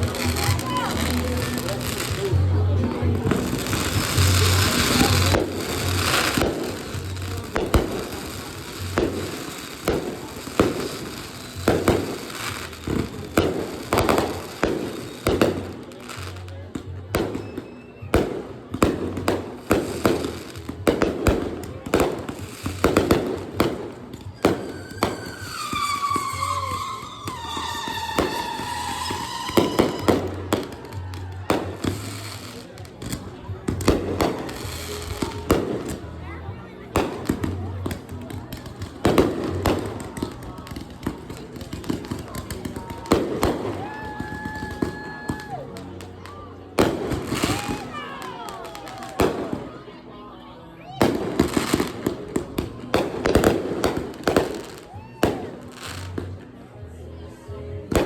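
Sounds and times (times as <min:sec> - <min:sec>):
hissing crackle of fireworks: 0:00.0 - 0:50.0, 0:50.9 - 0:56.6
whistling firework falling in pitch: 0:24.3 - 0:32.5.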